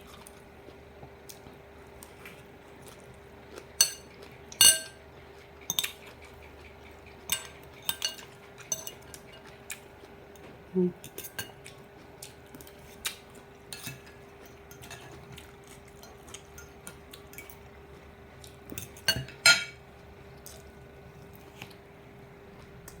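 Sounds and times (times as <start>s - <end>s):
faint steady hum: 0.0s - 23.0s
utensils clinking on a plate: 3.8s - 5.0s, 5.7s - 6.2s, 7.2s - 9.7s, 10.4s - 11.6s, 13.7s - 17.6s, 18.7s - 19.8s.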